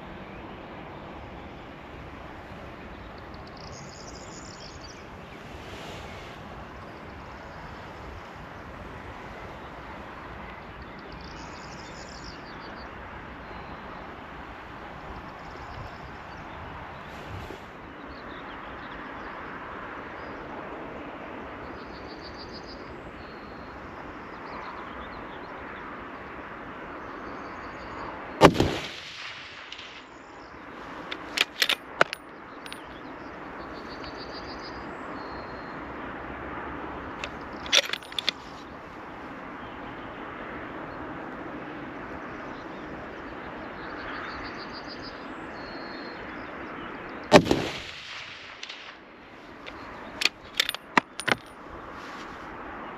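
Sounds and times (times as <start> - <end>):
rain hissing: 5.0 - 10.3
rifle shots with echo: 28.4 - 30.0, 47.3 - 49.0
rifle bolt clicks: 31.1 - 32.8, 37.2 - 38.4, 49.7 - 51.5.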